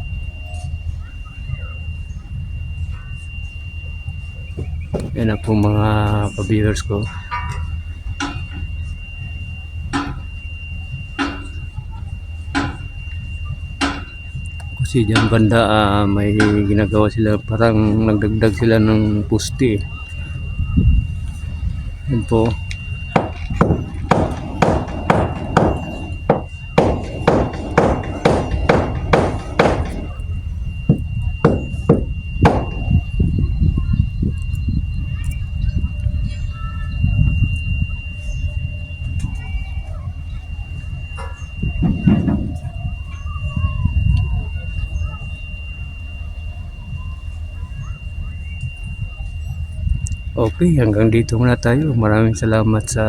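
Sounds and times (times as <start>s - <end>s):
faint steady high tone: 0.0s - 53.0s
faint thin whine: 0.0s - 53.0s
steady low rumble: 0.0s - 53.0s
sharp ringing knocks: 7.3s - 8.7s, 9.9s - 10.4s, 11.2s - 11.6s, 12.5s - 13.0s, 13.8s - 15.6s, 16.4s - 16.8s, 22.2s - 33.1s, 41.2s - 42.8s
hammering: 10.0s - 10.3s, 12.6s - 12.9s, 13.8s - 14.1s, 22.3s - 30.3s, 30.9s - 33.0s.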